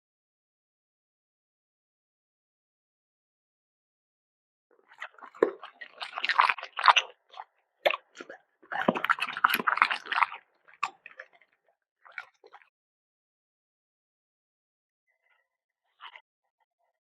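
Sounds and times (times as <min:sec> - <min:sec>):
pet chewing food: 0:04.9 - 0:11.4.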